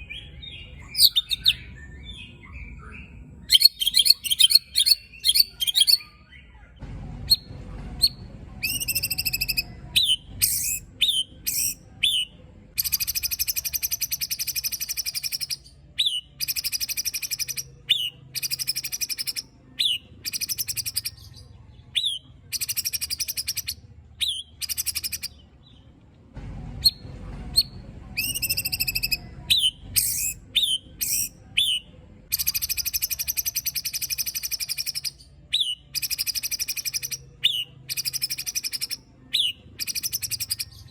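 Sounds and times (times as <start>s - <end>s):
bird harsh rasping calls: 7.3s - 21.3s, 27.6s - 40.7s.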